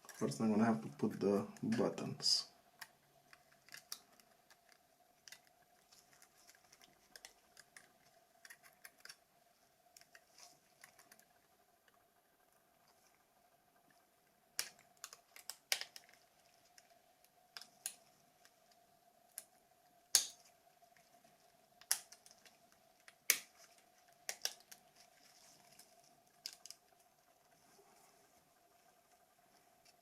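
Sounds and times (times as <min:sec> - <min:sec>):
faint steady hum: 0:00.0 - 0:30.0
plastic phone parts clicking: 0:02.8 - 0:09.2, 0:14.6 - 0:16.9, 0:21.8 - 0:24.8, 0:26.4 - 0:26.9.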